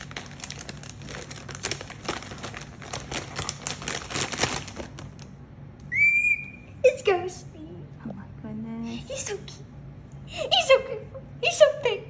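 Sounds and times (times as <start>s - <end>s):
plastic packaging crinkling: 0.0s - 5.4s.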